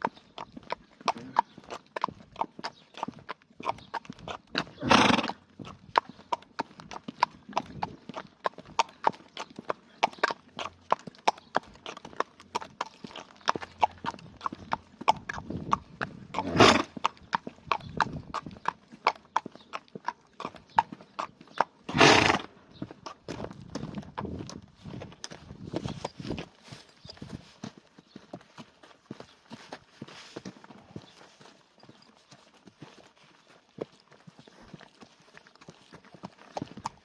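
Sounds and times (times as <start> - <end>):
horse hooves clip-clopping: 0.0 - 37.0
horse snorting: 1.1 - 1.5, 4.5 - 5.4, 15.3 - 17.1, 21.9 - 22.6.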